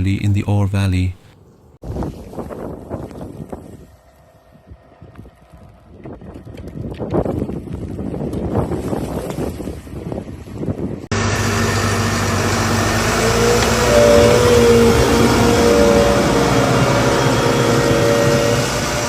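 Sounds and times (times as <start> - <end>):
wind noise on microphone: 1.8 - 11.1, 13.0 - 19.0
vehicle engine running: 11.1 - 19.0.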